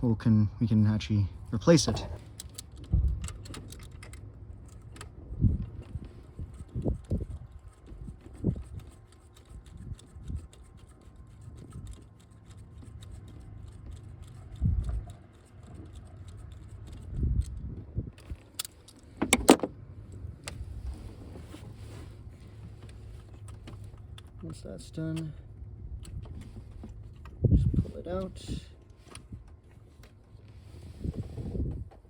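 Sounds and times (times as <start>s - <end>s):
metallic clatter of clicks: 2.2s - 5.1s.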